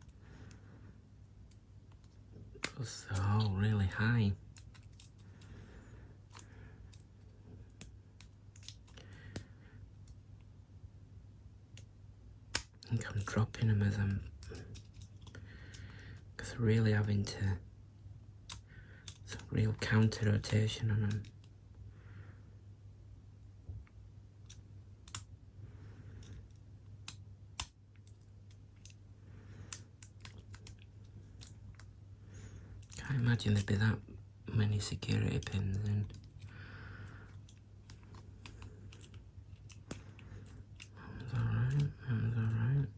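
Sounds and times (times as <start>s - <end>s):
steady low hum: 0.0s - 42.9s
faint lock pick clicks: 4.5s - 5.6s, 6.3s - 10.2s, 12.5s - 16.3s, 18.4s - 21.6s, 23.8s - 25.3s, 26.0s - 31.9s, 32.6s - 33.8s, 34.8s - 42.6s
lock pick clicking in padlock: 14.4s - 15.9s.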